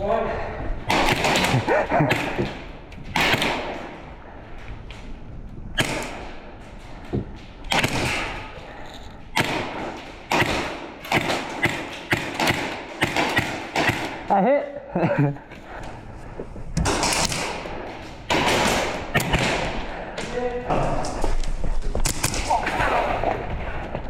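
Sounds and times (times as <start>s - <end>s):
sharp cracks: 0.8s - 5.1s, 5.7s - 14.3s, 16.8s - 23.8s
thumps and sharp knocks: 9.4s - 14.2s.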